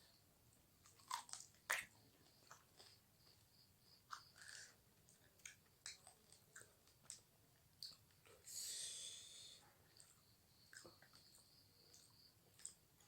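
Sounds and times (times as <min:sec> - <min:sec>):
chewing food: 0:00.8 - 0:03.4, 0:04.1 - 0:08.4, 0:10.0 - 0:13.0.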